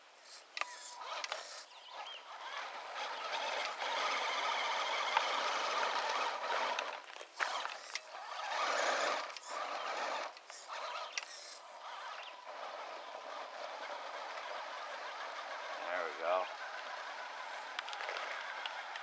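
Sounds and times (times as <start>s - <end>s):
electric motor straining: 0.6s - 19.0s
tyres grinding over gravel: 0.7s - 19.0s
stones clicking: 17.7s - 19.0s.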